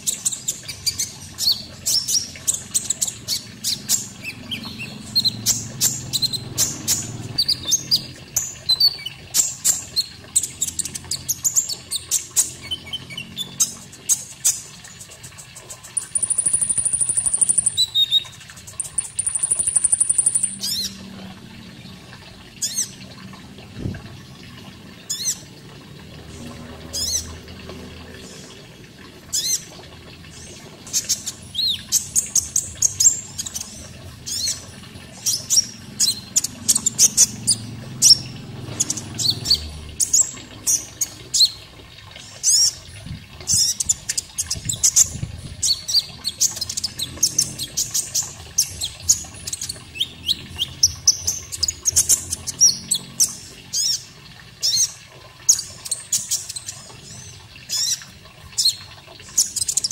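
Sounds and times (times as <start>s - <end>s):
running water: 0.0s - 59.9s
birds chirping: 0.4s - 9.2s.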